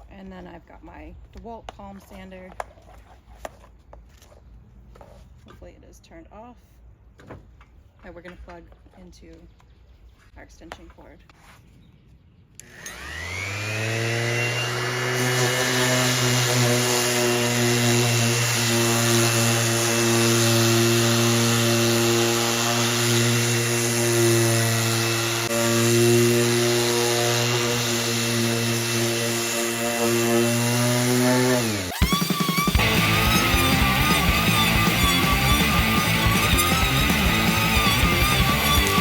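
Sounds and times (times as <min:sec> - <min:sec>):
palm sander sanding wood: 0:12.7 - 0:39.0.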